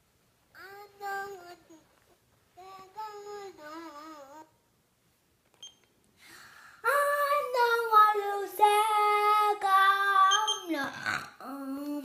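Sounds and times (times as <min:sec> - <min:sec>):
high voice singing: 0:06.8 - 0:12.0.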